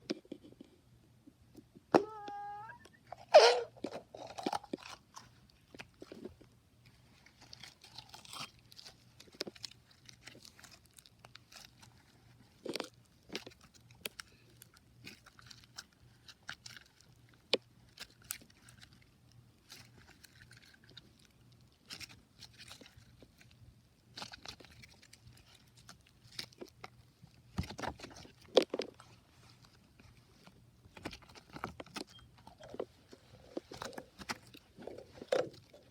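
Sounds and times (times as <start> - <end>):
pitched squeak: 2.0 - 3.8.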